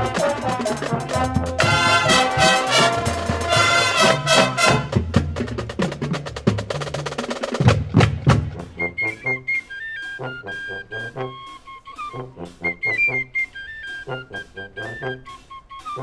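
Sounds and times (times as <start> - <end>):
high held notes: 0.0 - 5.6
drums with sharp clicking strokes: 0.0 - 9.0, 15.3 - 16.0
marching band brass chords: 0.0 - 16.0.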